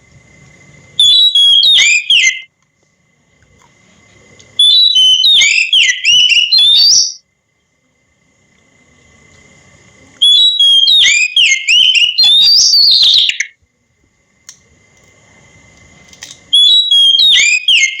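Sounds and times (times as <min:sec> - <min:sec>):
bird singing whistled phrases: 0:01.0 - 0:02.5, 0:04.6 - 0:07.2, 0:10.2 - 0:13.5, 0:16.5 - 0:18.0
faint steady high tone: 0:01.0 - 0:02.5, 0:04.2 - 0:08.0.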